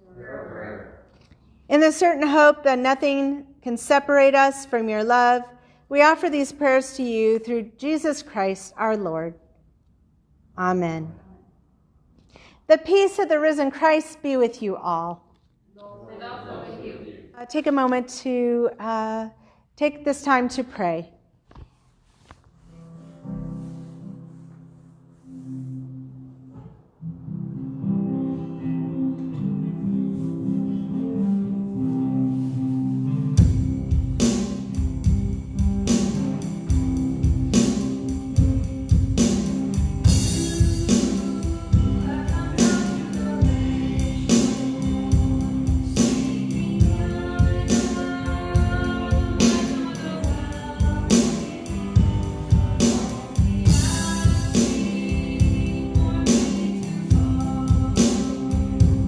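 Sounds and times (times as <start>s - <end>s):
drums and bass beat: 33.4s - 59.0s.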